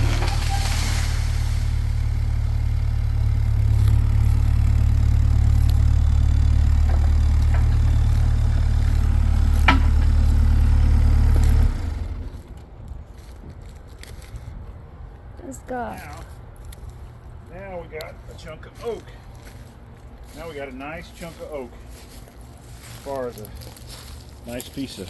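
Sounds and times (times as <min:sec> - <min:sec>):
engine idling with low hum: 0:00.0 - 0:13.1.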